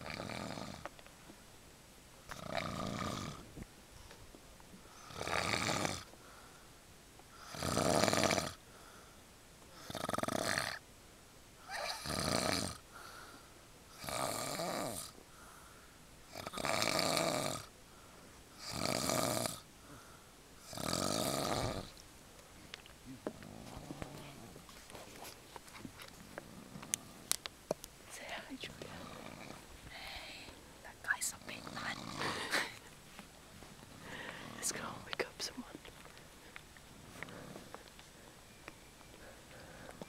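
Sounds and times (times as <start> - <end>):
person snoring: 2.3 - 3.4, 5.0 - 6.1, 7.4 - 8.6, 9.8 - 10.8, 11.7 - 12.8, 14.0 - 15.1, 16.3 - 17.7, 18.6 - 19.6, 20.6 - 21.9, 28.8 - 30.5, 31.6 - 32.8.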